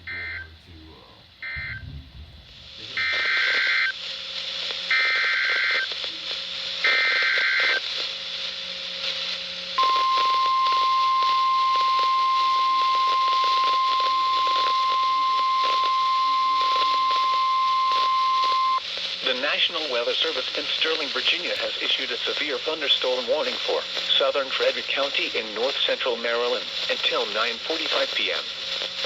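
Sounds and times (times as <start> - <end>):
radio hiss: 0.0 - 29.0
warning alarm tone: 1.4 - 2.0
buzzy digital data bursts: 2.6 - 29.0.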